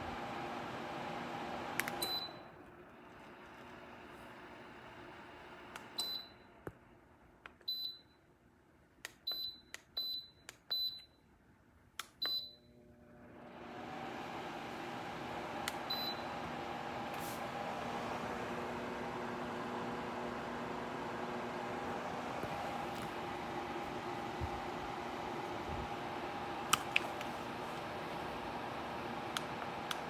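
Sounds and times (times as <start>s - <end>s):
fan motor humming: 13.2s - 30.0s.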